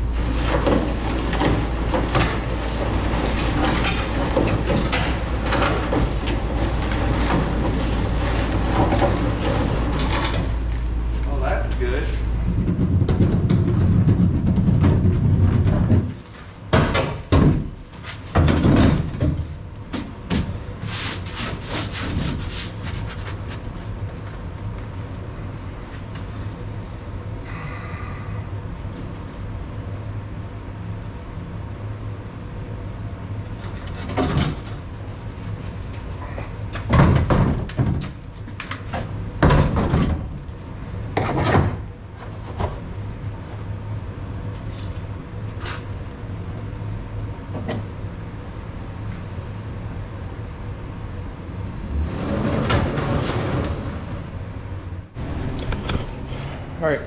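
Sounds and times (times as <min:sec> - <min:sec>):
low hum: 0:00.0 - 0:16.7
low mechanical drone: 0:00.0 - 0:57.0
clunks and knocks: 0:12.4 - 0:20.6, 0:36.4 - 0:40.4, 0:41.1 - 0:41.9.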